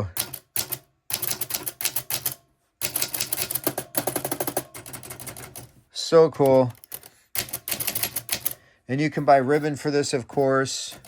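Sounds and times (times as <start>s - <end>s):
manual typewriter clacking: 0.1s - 5.8s, 6.4s - 8.6s, 10.8s - 11.0s.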